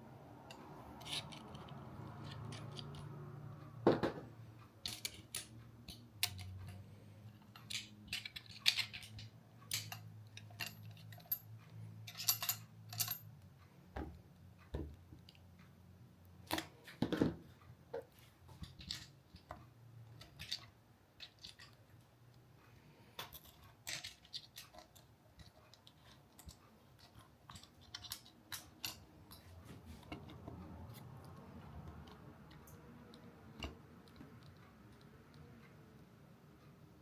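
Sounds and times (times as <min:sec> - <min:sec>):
small hard parts clicking: 0:00.4 - 0:03.8, 0:04.6 - 0:13.8, 0:14.6 - 0:36.1.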